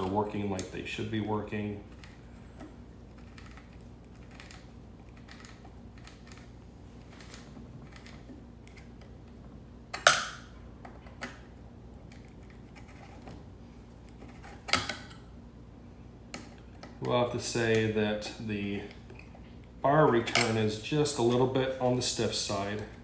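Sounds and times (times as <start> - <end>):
chainsaw parts clicking and rattling: 1.9 - 8.3.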